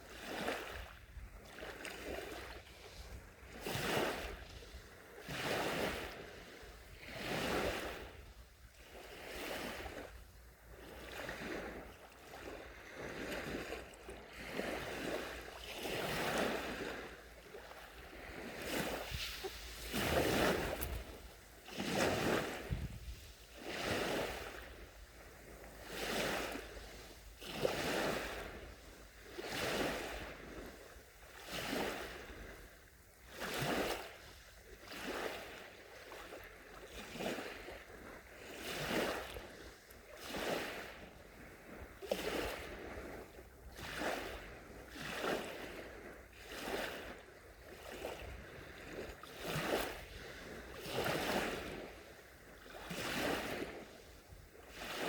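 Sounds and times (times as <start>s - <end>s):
small waves lapping on beach: 0.0s - 55.0s.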